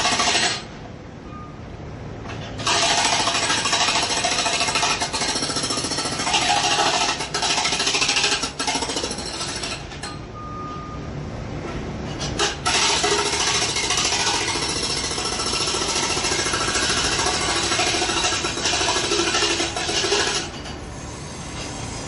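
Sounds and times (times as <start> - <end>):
jackhammer hammering: 0.0 - 0.7, 2.6 - 10.1, 12.4 - 20.6.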